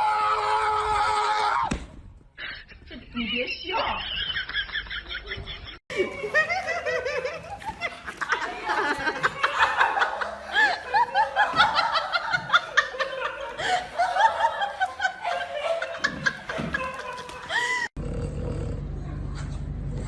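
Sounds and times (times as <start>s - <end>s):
people giggling: 2.4s - 18.0s.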